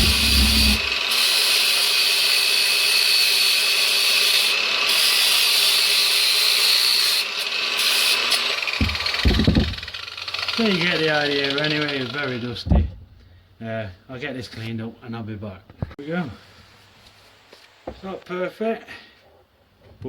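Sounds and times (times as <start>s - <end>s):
angle grinder sanding: 0.0s - 12.5s.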